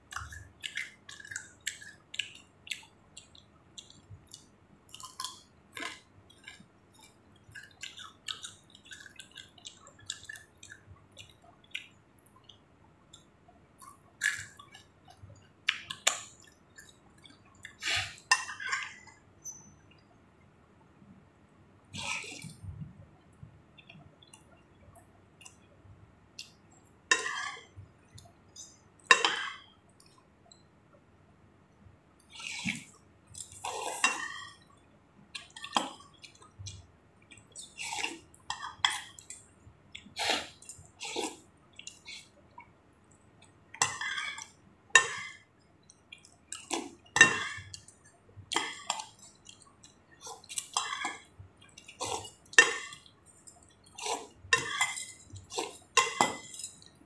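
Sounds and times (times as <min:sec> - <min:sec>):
chewing: 0:00.1 - 0:19.2, 0:32.2 - 0:57.0
slurping noodle soup: 0:32.2 - 0:34.6, 0:37.6 - 0:39.2, 0:40.0 - 0:42.4, 0:51.9 - 0:53.1, 0:53.8 - 0:56.8.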